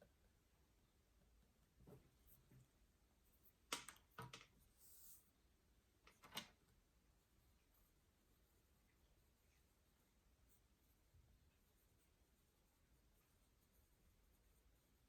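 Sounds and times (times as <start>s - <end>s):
faint clicks and knocks: 3.6s - 4.6s, 6.0s - 6.7s
soft rustle: 4.4s - 5.5s, 6.1s - 15.0s.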